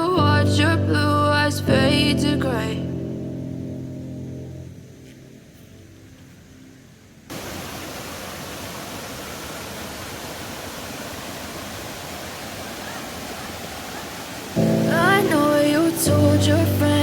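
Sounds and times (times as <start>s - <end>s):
waterfall rushing: 7.3s - 17.0s.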